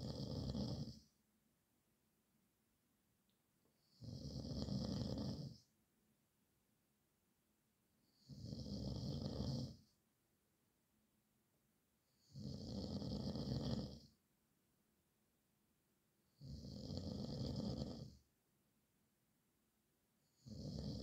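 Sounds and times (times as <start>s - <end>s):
man snoring: 0.0s - 1.0s, 3.9s - 5.6s, 8.2s - 9.8s, 12.2s - 14.1s, 16.4s - 18.2s, 20.4s - 21.0s.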